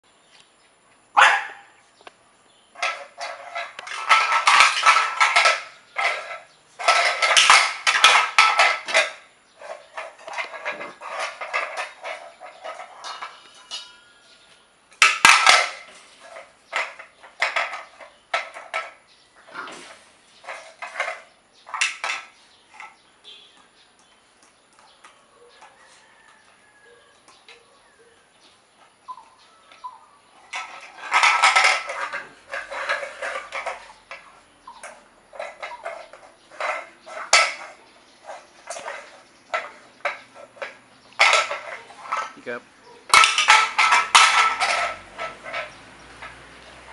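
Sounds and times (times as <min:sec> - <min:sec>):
clattering and scuffling: 0:02.0 - 0:27.7, 0:29.7 - 0:46.9
puppies growling and yipping: 0:19.4 - 0:20.2.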